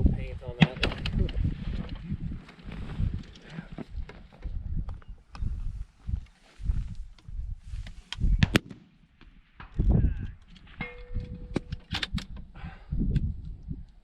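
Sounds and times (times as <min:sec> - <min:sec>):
wind rumbling on microphone: 0:00.0 - 0:08.7, 0:09.3 - 0:14.0
rifle and gear clicks and knocks: 0:09.2 - 0:12.5.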